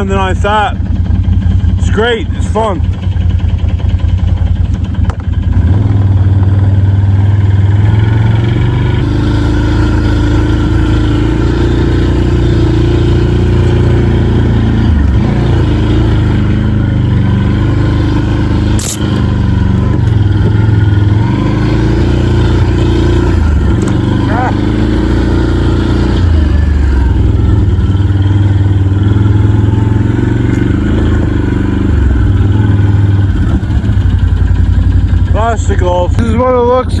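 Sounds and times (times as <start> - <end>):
atv engine running under load: 0.0 - 37.0
sharp click: 18.8 - 19.3.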